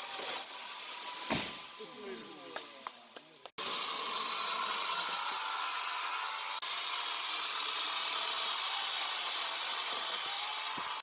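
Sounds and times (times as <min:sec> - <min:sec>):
angle grinder whirring: 0:03.6 - 0:11.0.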